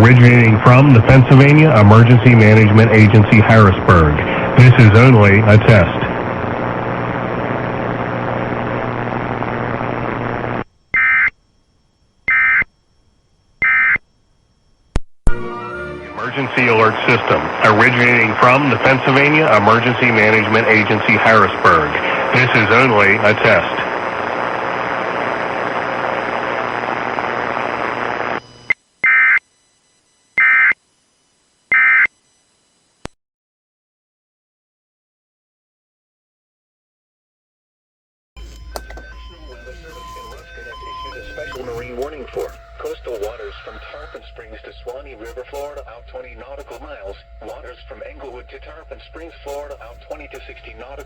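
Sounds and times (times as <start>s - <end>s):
steady hiss with low hum: 0.0s - 33.2s, 38.4s - 51.0s
warbling digital data bursts: 38.4s - 51.0s.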